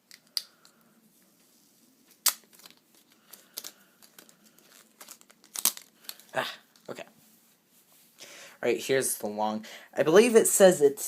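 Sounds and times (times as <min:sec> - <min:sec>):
packaging clicking and rustling: 0:02.1 - 0:06.9.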